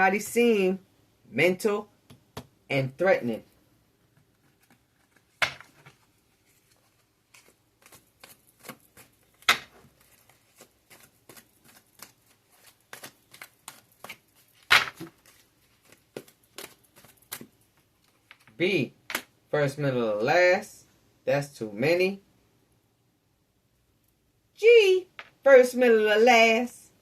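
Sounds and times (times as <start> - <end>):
cards being shuffled: 4.1 - 19.3
card slaps: 10.6 - 17.5.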